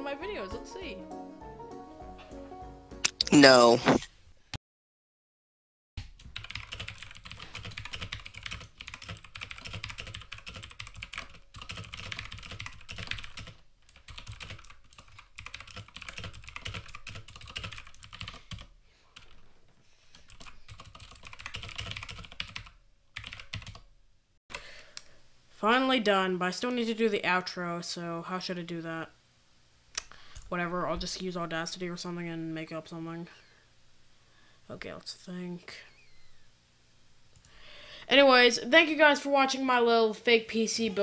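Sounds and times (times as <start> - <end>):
fast keyboard typing: 6.0 - 19.4, 20.1 - 23.9.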